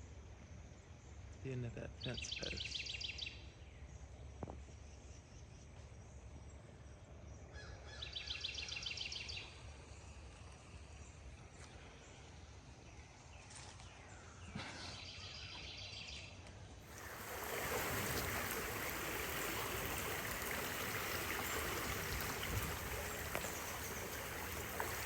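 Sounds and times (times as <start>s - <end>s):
rushing hiss: 16.9s - 25.0s.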